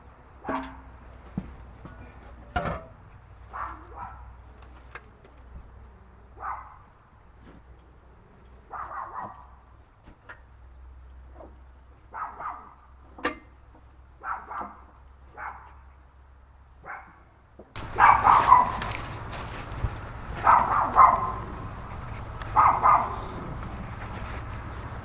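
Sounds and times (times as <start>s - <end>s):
dog barking: 3.5s - 4.4s, 6.4s - 6.9s, 8.7s - 9.6s, 12.1s - 12.8s, 14.2s - 15.8s, 16.8s - 17.2s, 17.8s - 25.0s.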